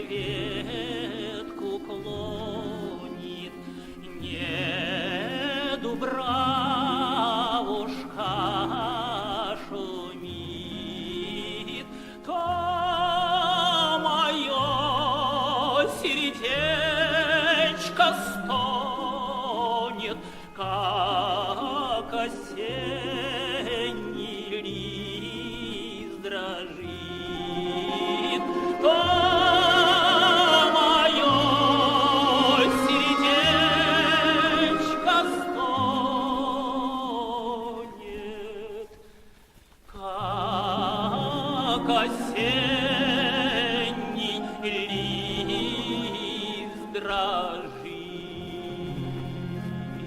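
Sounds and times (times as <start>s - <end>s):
instrumental accompaniment: 0.0s - 38.1s
man singing operatically: 0.0s - 39.1s, 39.9s - 50.0s.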